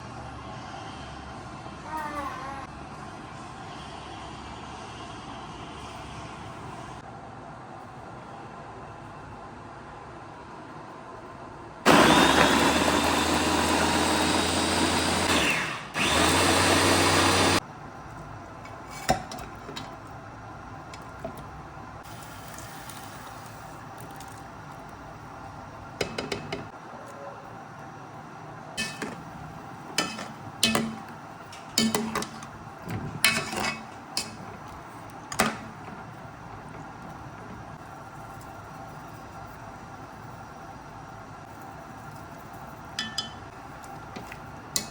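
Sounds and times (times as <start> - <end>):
electric blender running: 11.9 - 17.6.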